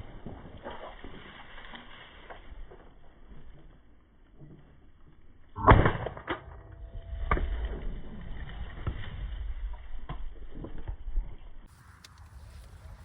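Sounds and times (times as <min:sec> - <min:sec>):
wind rumbling on microphone: 0:05.9 - 0:13.0.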